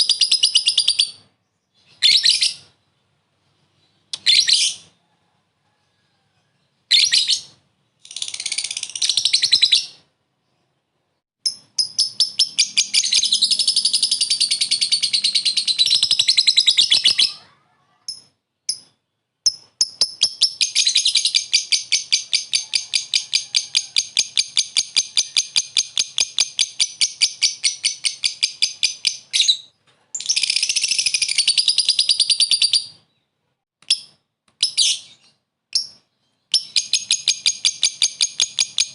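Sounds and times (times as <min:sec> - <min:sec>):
lovebird chattering song: 0:01.8 - 0:02.7, 0:11.4 - 0:17.5, 0:18.1 - 0:33.0, 0:33.9 - 0:38.9.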